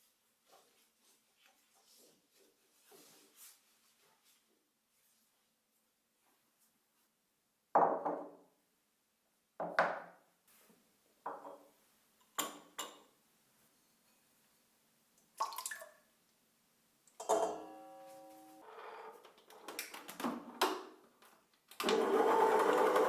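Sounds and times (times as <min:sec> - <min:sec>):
dishes or glassware clinking: 0:17.2 - 0:18.6.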